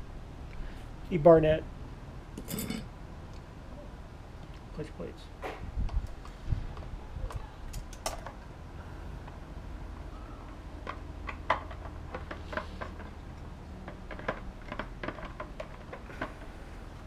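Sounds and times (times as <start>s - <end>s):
metal parts clicking and tapping: 7.3s - 8.4s.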